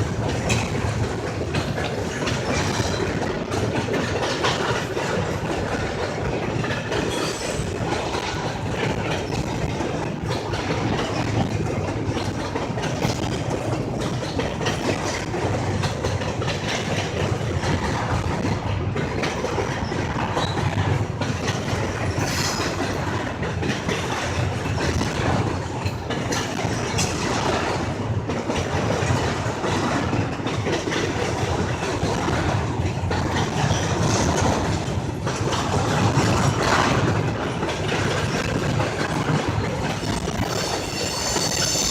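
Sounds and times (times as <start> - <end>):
freight train rumbling past: 0.0 - 41.9
wheels clicking over rail joints: 0.0 - 41.9.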